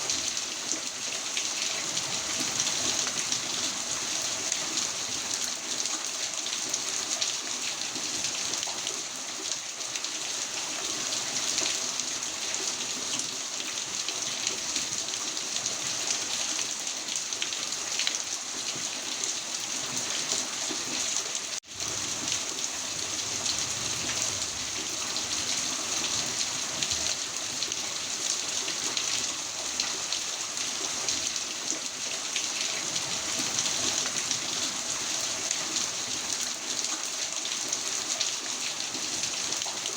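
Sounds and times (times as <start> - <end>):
heavy rain falling: 19.9 - 31.4.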